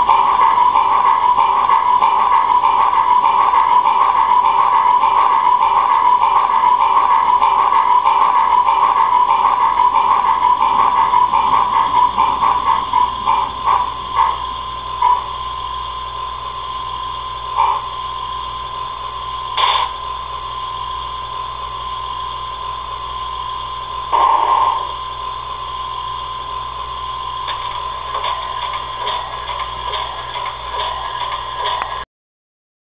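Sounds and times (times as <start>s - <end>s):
steam locomotive chuffs: 0.0s - 15.8s, 17.5s - 17.9s, 24.1s - 25.0s, 27.5s - 32.0s
steady hum: 0.0s - 32.0s.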